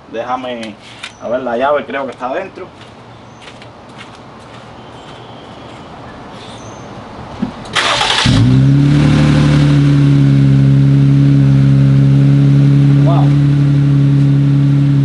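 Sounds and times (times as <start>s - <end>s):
loud engine idling unsilenced: 7.7s - 8.5s.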